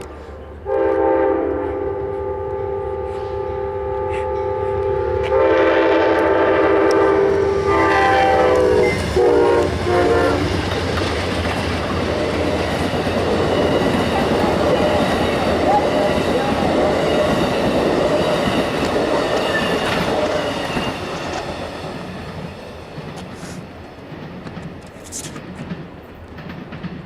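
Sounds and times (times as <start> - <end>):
train wheels on rails: 0.0 - 27.0
locomotive air horn blasts: 0.4 - 10.5.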